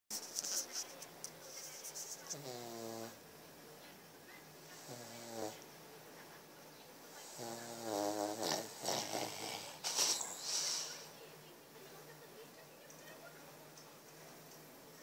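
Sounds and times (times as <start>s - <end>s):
person snoring: 7.2s - 11.1s
hissy rasping breathing: 7.2s - 11.2s.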